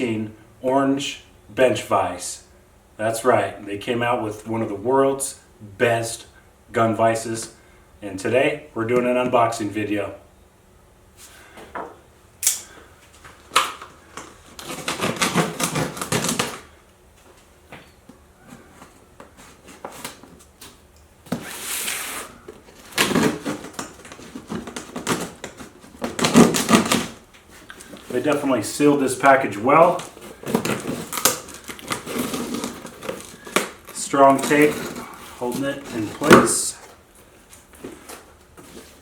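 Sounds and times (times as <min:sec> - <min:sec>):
cardboard and tape scraping: 0:14.2 - 0:16.7, 0:18.6 - 0:28.5, 0:29.8 - 0:39.0.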